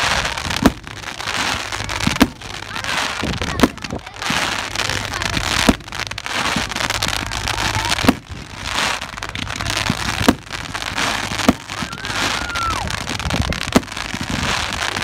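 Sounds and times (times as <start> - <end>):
crackling hiss: 0.0 - 15.0
firework bangs: 0.0 - 15.0
firework whistle: 10.8 - 15.0.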